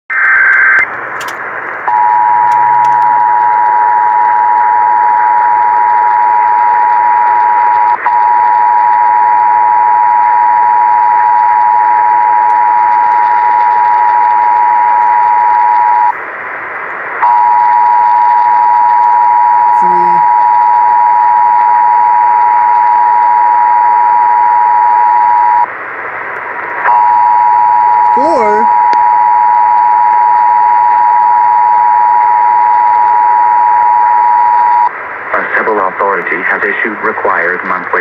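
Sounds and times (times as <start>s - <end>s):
radio hiss: 35.2s - 38.0s.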